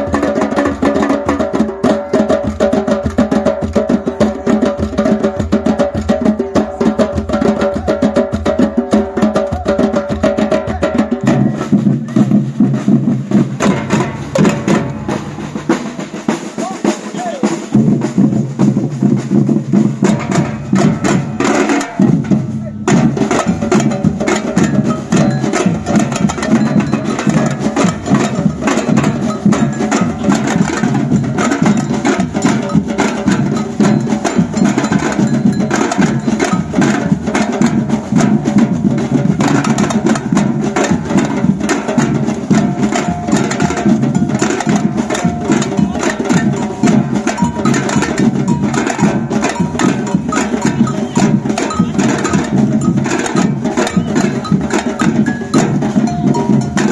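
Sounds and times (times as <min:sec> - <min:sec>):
deep drums: 0:00.0 - 0:56.9
bright bell pattern: 0:23.6 - 0:36.9, 0:42.6 - 0:56.9.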